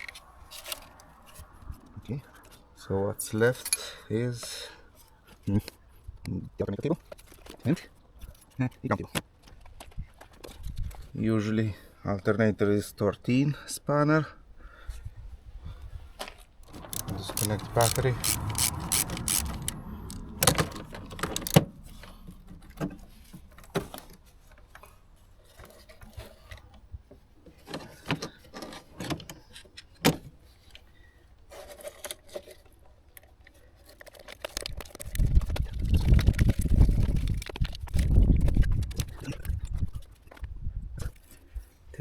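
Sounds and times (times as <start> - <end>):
rumbling handling noise: 16.1 - 26.9.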